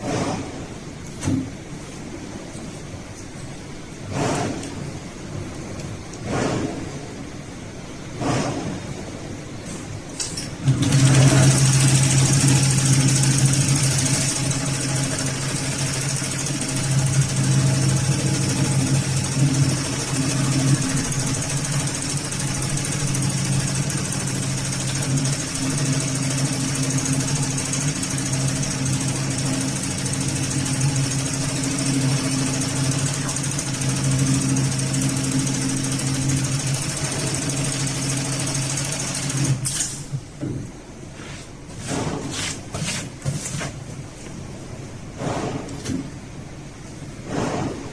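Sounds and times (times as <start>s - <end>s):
sewing machine running: 10.6s - 39.8s.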